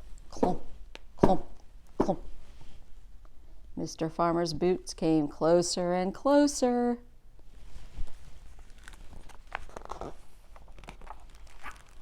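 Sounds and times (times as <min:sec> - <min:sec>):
paper pages rustling: 0:07.9 - 0:12.0.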